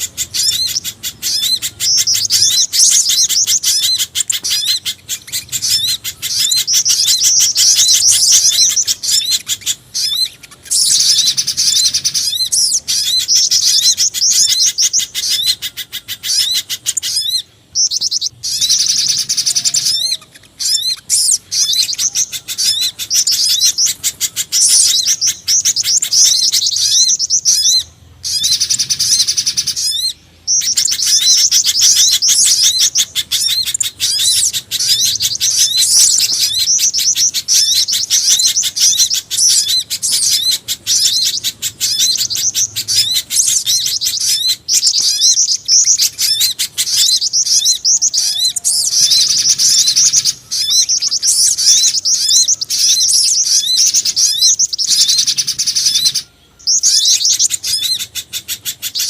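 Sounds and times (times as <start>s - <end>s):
birds chirping and trilling: 0.0s - 59.0s.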